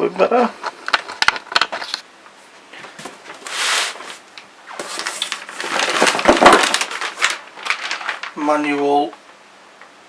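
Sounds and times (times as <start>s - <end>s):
packaging rustling: 2.9s - 8.8s
plastic bags crinkling: 3.2s - 9.2s.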